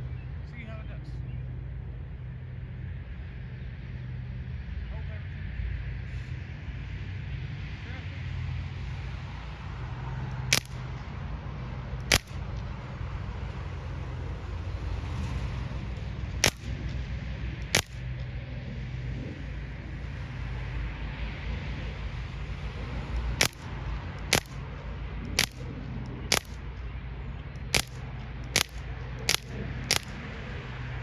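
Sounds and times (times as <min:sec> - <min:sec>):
steady low rumble: 0:00.0 - 0:31.0
pellet rifle shots: 0:10.4 - 0:11.1, 0:12.0 - 0:12.6, 0:16.4 - 0:17.0, 0:17.6 - 0:18.2, 0:23.4 - 0:26.8, 0:27.6 - 0:30.2.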